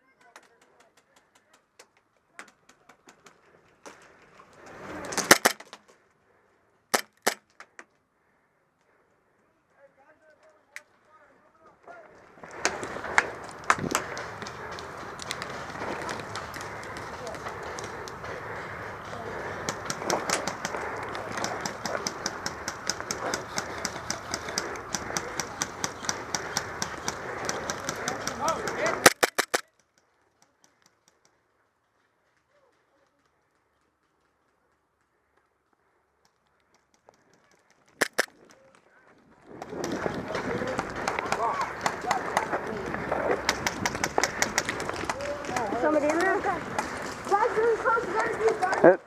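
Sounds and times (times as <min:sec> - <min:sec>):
airsoft guns popping: 0:05.1 - 0:05.8, 0:06.9 - 0:07.9, 0:12.5 - 0:31.4, 0:36.6 - 0:38.6, 0:43.2 - 0:47.0
rustle of movement: 0:12.2 - 0:29.6
loud snaps: 0:19.6 - 0:29.7, 0:38.0 - 0:38.3.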